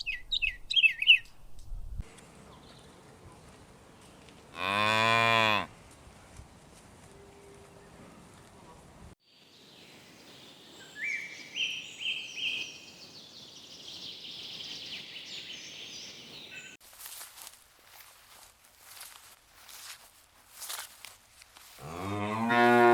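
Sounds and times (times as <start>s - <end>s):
small birds chirping: 0.0s - 1.3s, 9.2s - 16.8s
faint outdoor hiss: 5.8s - 22.4s.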